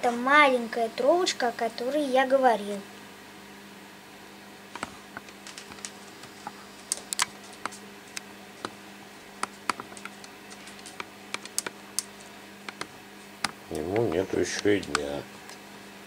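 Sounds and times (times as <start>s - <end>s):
steady low hum: 0.0s - 16.0s
light clicks and taps: 12.7s - 15.6s.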